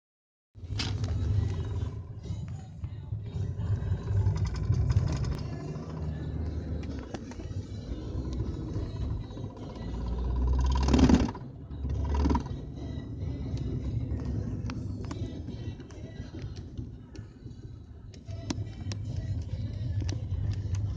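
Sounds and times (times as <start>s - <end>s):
diesel engine accelerating: 0.6s - 16.5s.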